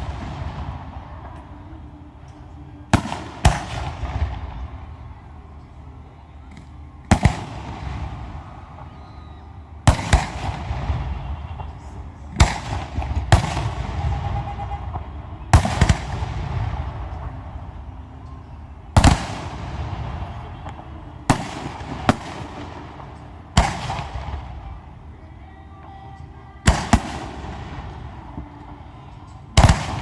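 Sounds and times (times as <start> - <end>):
fireworks booming: 0.0 - 1.6, 9.9 - 17.8, 18.9 - 24.7.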